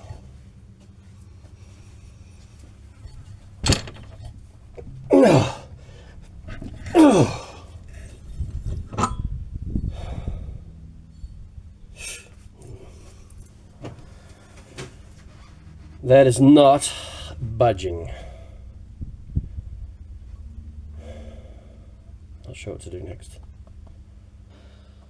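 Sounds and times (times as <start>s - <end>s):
man groaning with effort: 5.1s - 5.7s, 6.9s - 7.6s.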